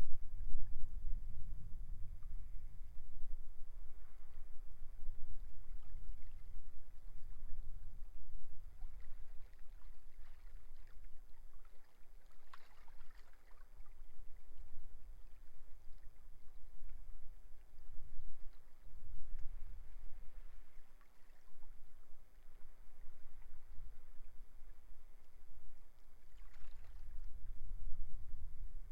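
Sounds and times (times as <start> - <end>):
wind buffeting microphone: 0.0 - 11.4, 14.6 - 20.8, 25.7 - 28.9.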